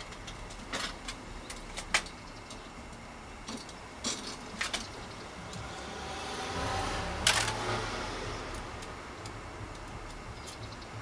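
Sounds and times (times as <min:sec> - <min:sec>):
bicycle parts clicking: 0:00.0 - 0:05.7, 0:08.5 - 0:10.8.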